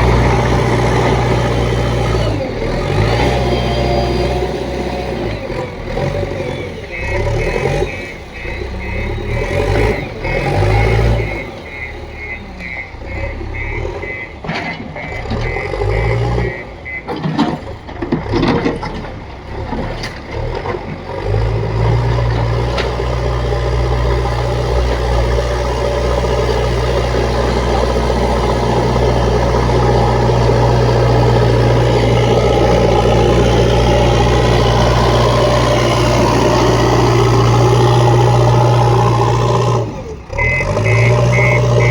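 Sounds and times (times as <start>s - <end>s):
diesel engine running: 0.0s - 41.9s
reversing alarm beeping: 5.2s - 17.6s, 40.3s - 41.9s
knocks and clatters: 14.4s - 15.6s, 17.0s - 21.3s.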